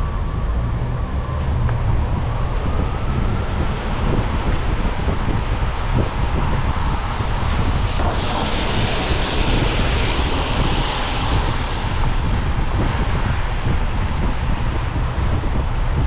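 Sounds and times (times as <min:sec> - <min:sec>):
car road noise low rumble: 0:00.0 - 0:16.0
tyres hissing on wet road: 0:06.9 - 0:13.5.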